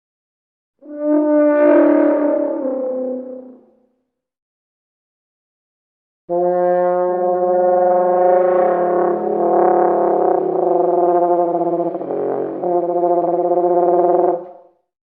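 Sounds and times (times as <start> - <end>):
long low dinosaur call: 0.8 - 3.7, 6.3 - 14.5.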